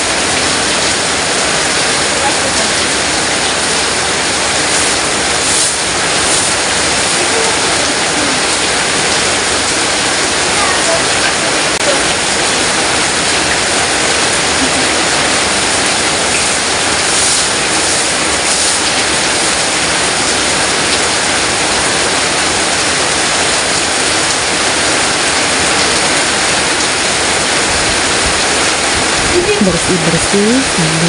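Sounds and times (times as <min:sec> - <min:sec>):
heavy rain hissing: 0:00.0 - 0:31.0
person speaking: 0:02.1 - 0:03.0, 0:04.7 - 0:09.3, 0:10.4 - 0:12.3, 0:14.5 - 0:15.7, 0:29.3 - 0:31.0.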